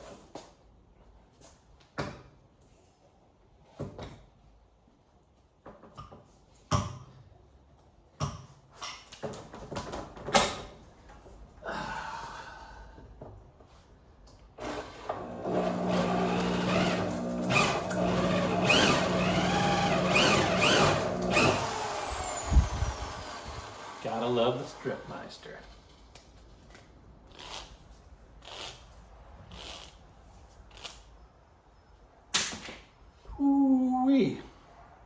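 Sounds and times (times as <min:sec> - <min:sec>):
wire stripper motor running: 0:14.6 - 0:24.4
squeals of cutting insulation: 0:15.4 - 0:24.6.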